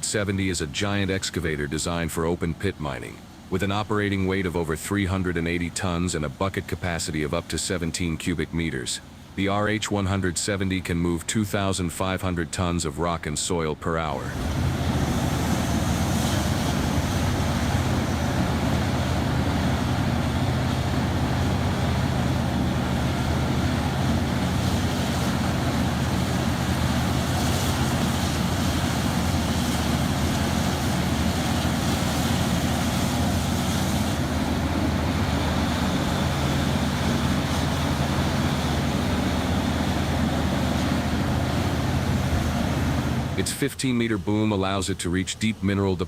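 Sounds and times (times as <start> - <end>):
diesel engine droning: 0.0 - 46.0.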